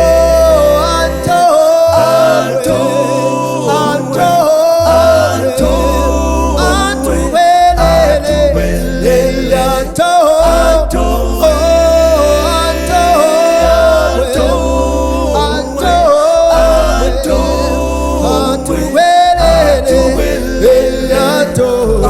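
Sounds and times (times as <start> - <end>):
a cappella group singing in harmony: 0.0 - 22.0.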